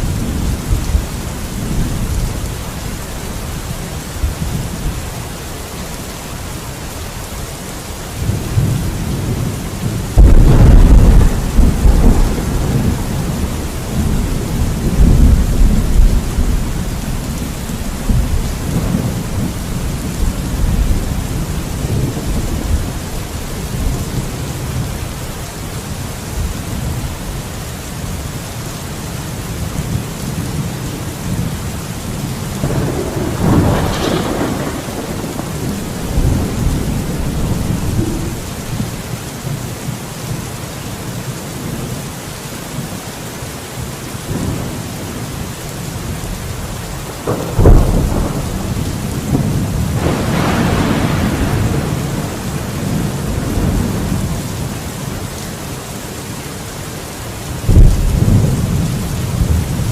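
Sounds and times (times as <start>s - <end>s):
heavy rain hissing: 0.0s - 59.9s
rolling thunder: 8.2s - 24.9s, 32.5s - 39.0s, 47.0s - 54.7s, 57.6s - 59.9s
sharp thunderclap: 8.6s - 16.8s, 32.6s - 38.9s, 47.2s - 54.3s, 57.7s - 59.9s.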